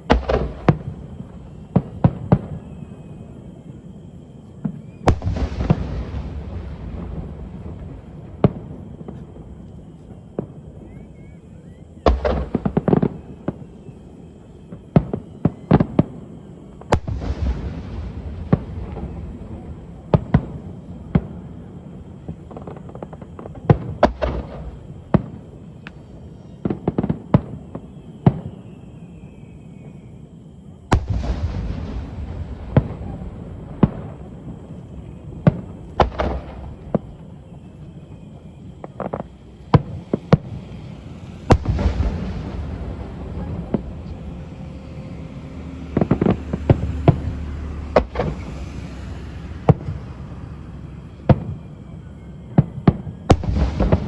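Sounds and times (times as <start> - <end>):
fireworks bursting: 0.0 - 54.0
steady low rumble: 38.2 - 54.0.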